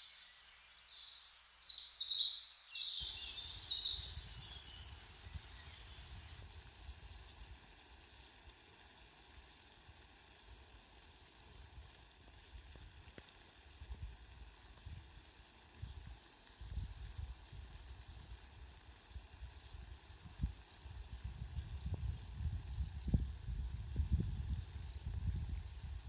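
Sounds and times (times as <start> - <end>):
rain hissing: 3.0 - 26.0.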